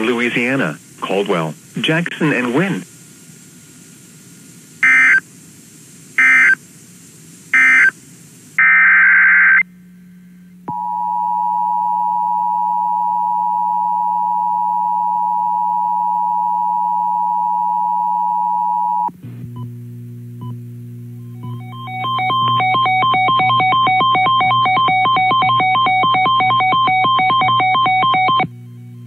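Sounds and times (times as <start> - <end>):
faint low hum: 0.0 - 29.0
digital data bursts: 4.8 - 5.2, 6.2 - 6.6, 7.5 - 8.0, 21.5 - 28.5
steady warning alarm tone: 4.8 - 5.2, 6.2 - 6.6, 7.6 - 8.0, 8.6 - 9.7, 21.2 - 29.0.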